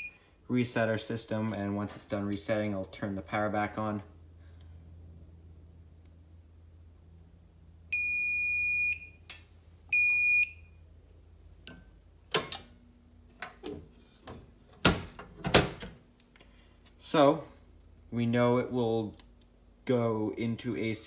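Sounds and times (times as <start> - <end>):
alarm panel beeping: 7.9 - 9.2, 9.9 - 10.8.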